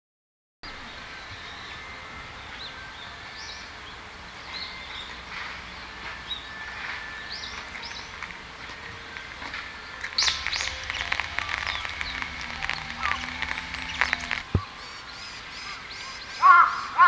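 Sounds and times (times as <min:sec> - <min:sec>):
birds chirping: 0:09.8 - 0:14.7.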